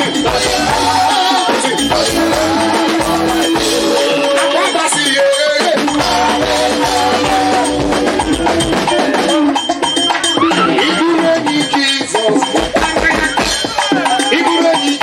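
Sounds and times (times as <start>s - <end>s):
bell or wood-block hits: 0.0s - 15.0s
long held pitched notes: 5.8s - 9.2s.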